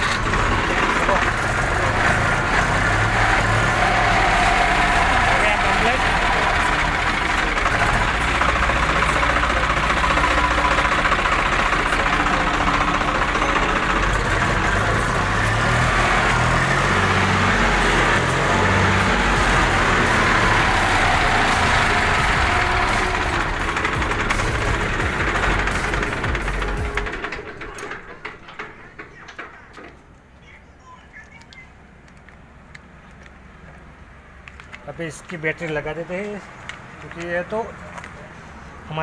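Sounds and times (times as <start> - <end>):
starter motor running: 0.0 - 30.0.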